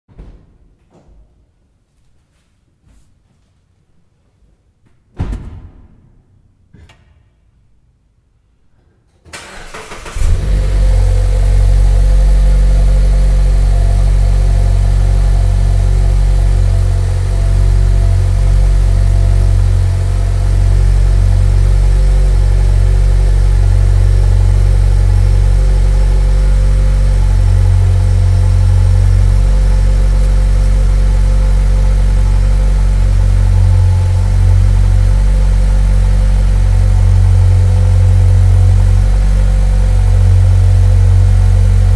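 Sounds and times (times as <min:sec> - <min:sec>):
car engine starting and idling: 0:09.2 - 0:41.9.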